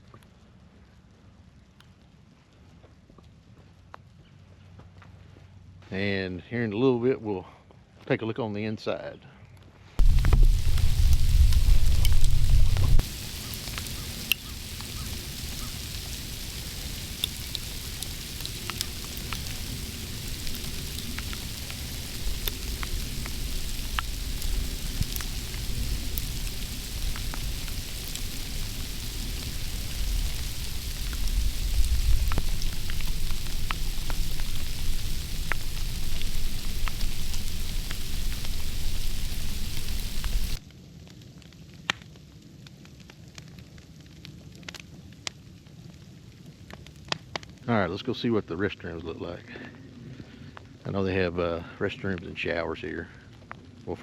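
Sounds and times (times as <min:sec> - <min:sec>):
sleet falling hiss: 0:10.0 - 0:40.6
sleet pellets ticking: 0:10.0 - 0:40.6
wind rumble on microphone: 0:10.0 - 0:40.6.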